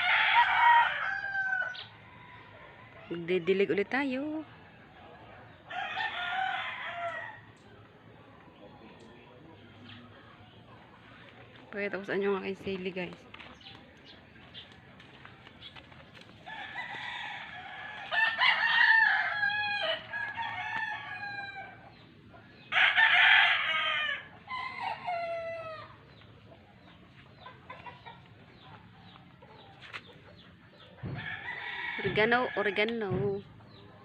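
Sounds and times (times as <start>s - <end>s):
rooster crowing: 0.0s - 3.1s, 16.5s - 21.9s, 22.7s - 26.0s, 31.2s - 32.7s.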